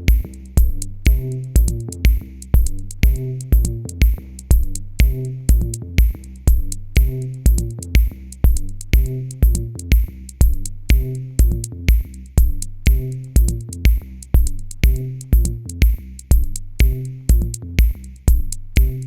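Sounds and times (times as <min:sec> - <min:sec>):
electronic music: 0:00.0 - 0:10.1
bass line: 0:00.0 - 0:19.0
drum machine beat: 0:00.0 - 0:19.0.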